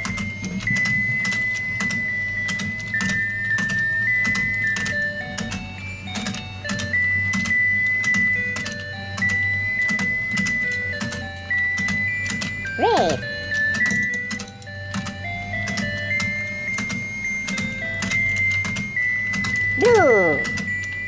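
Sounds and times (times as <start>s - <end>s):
toy clicking: 11.8s - 21.0s
toy motor hum: 19.6s - 20.8s.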